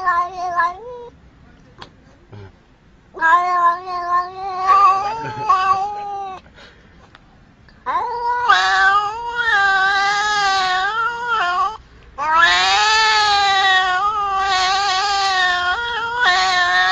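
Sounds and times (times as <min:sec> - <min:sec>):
cat yowling: 0:00.0 - 0:01.1, 0:03.2 - 0:06.4, 0:07.8 - 0:16.9.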